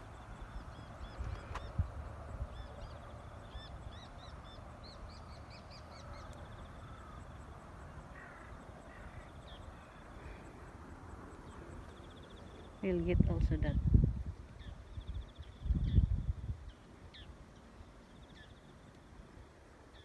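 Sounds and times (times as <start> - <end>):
faint insect trill: 0.0 - 12.9
birds chirping: 0.0 - 13.2
wind on microphone: 0.4 - 2.7, 12.9 - 16.8.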